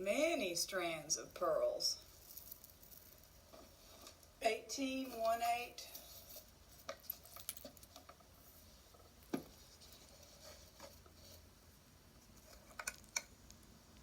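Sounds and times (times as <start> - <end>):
pearl beads clicking and rattling: 2.0 - 3.4.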